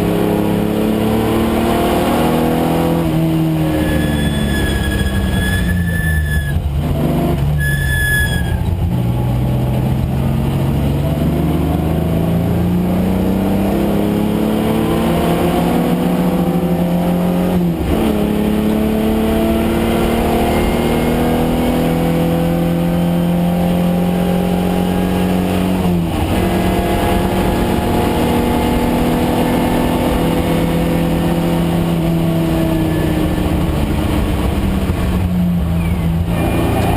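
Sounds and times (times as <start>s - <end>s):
car engine revving under load: 0.0s - 36.9s.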